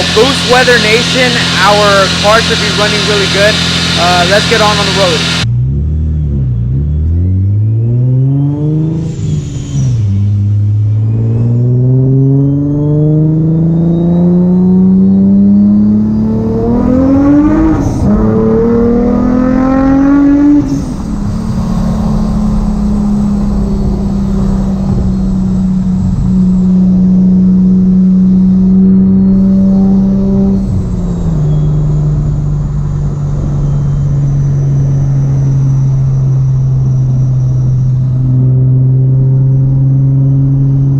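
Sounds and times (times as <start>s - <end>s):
blow-off valve hissing: 0.0s - 5.4s
car engine revving through gears: 0.0s - 40.9s
supercharger whine: 0.0s - 40.9s.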